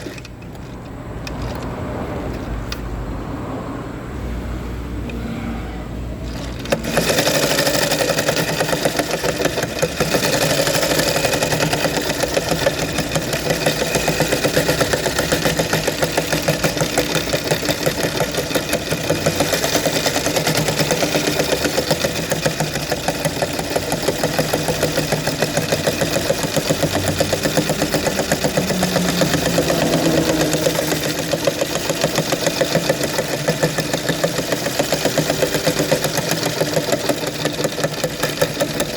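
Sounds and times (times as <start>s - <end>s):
sewing machine stitching: 0.0s - 2.0s, 6.2s - 38.9s
low motor hum: 0.0s - 7.8s, 23.6s - 34.3s.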